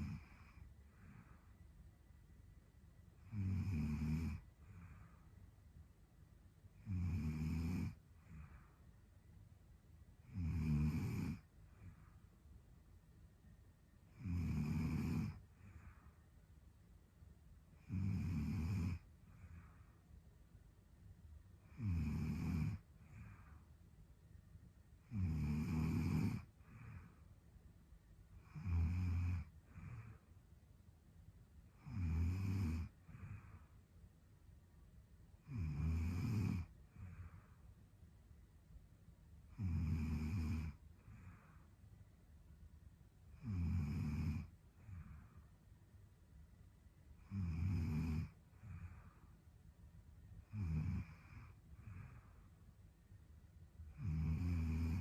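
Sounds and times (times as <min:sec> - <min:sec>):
woman snoring: 0:00.0 - 0:01.2, 0:03.2 - 0:05.1, 0:06.8 - 0:08.6, 0:10.2 - 0:11.9, 0:14.1 - 0:15.9, 0:17.8 - 0:19.7, 0:21.6 - 0:23.5, 0:25.0 - 0:27.1, 0:28.4 - 0:30.2, 0:31.8 - 0:33.5, 0:35.4 - 0:37.4, 0:39.5 - 0:41.6, 0:43.3 - 0:45.2, 0:47.2 - 0:49.1, 0:50.4 - 0:52.2, 0:53.9 - 0:55.0
faint breath: 0:00.0 - 0:02.0, 0:04.4 - 0:06.1, 0:07.9 - 0:09.6, 0:11.5 - 0:12.8, 0:15.3 - 0:17.0, 0:18.9 - 0:20.5, 0:22.7 - 0:24.8, 0:26.4 - 0:28.4, 0:29.4 - 0:30.5, 0:32.8 - 0:34.2, 0:36.6 - 0:38.1, 0:40.7 - 0:42.2, 0:44.4 - 0:45.9, 0:48.2 - 0:49.8, 0:51.0 - 0:53.2.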